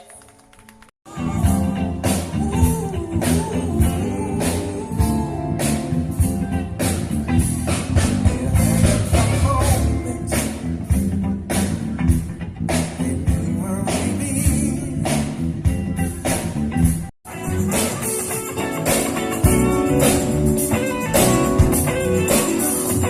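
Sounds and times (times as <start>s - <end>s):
rock blues song: 1.1s - 23.0s.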